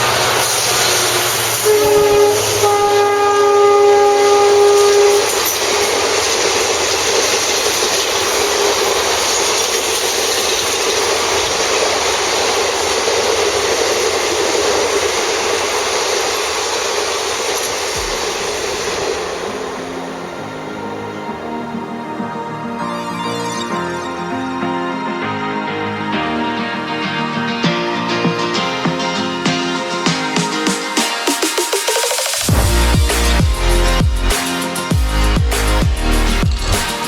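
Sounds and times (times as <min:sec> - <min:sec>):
train coaches rushing and clattering: 0:00.0 - 0:37.0
locomotive horn chord: 0:00.8 - 0:06.3, 0:19.1 - 0:26.5.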